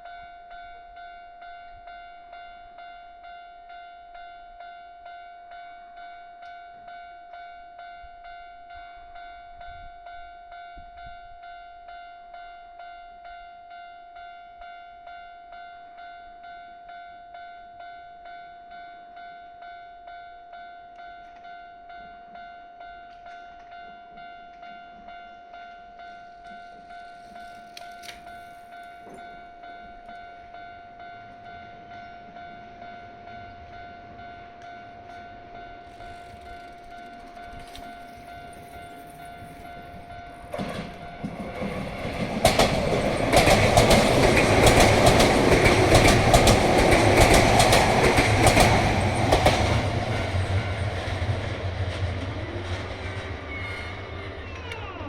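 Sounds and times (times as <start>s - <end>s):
train rumble: 33.1s - 55.0s.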